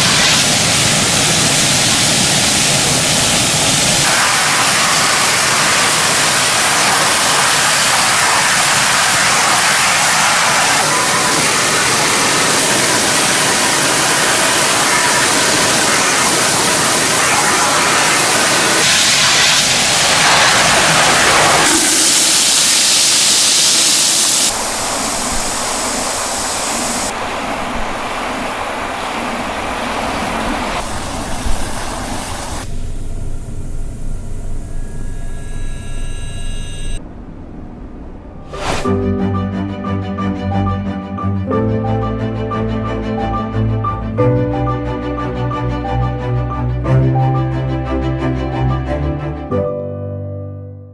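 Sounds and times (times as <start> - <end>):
high-pressure water jet spraying: 0.0 - 34.5.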